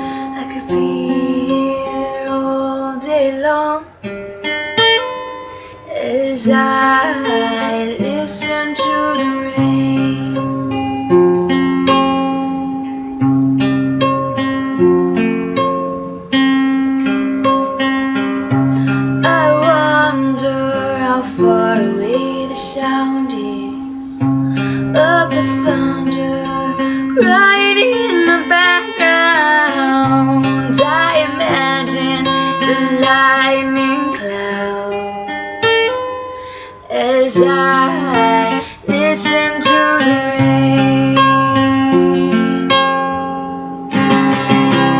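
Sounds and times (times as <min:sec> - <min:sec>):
woman singing: 0:00.0 - 0:04.0, 0:05.7 - 0:10.9, 0:18.2 - 0:42.7
acoustic guitar strumming chords: 0:00.0 - 0:44.9.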